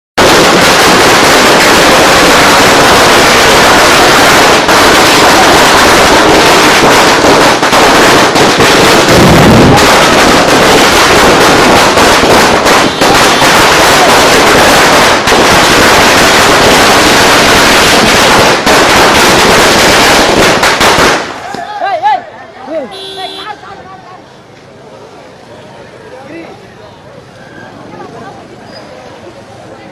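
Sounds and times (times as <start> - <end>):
loud crackling with sharp pops: 0.2 - 21.8.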